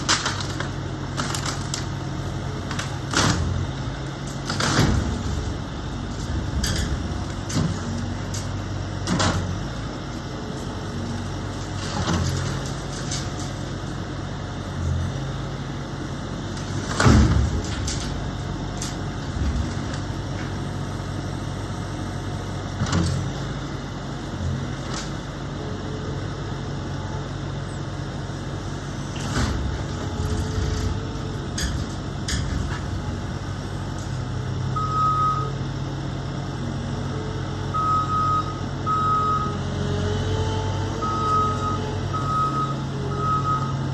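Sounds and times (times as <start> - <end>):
demolition knocks and clatter: 0.0 - 14.0, 16.5 - 20.8, 29.0 - 34.4
heavy diesel machinery running: 0.0 - 43.9
reversing alarm beeping: 34.7 - 35.6, 37.7 - 39.7, 41.0 - 43.9.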